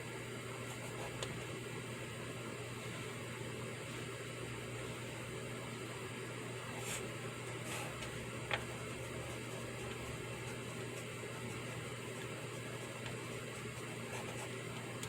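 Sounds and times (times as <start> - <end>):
white-noise hiss: 0.0 - 15.0
pencil scratching on paper: 6.7 - 15.0.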